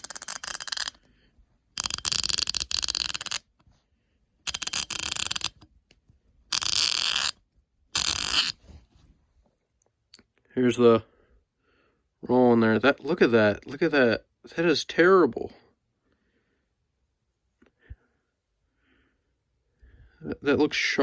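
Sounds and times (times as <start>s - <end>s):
ratchet clicking: 0.0s - 1.0s, 1.8s - 3.4s, 4.5s - 5.7s, 6.5s - 7.4s, 8.0s - 8.6s.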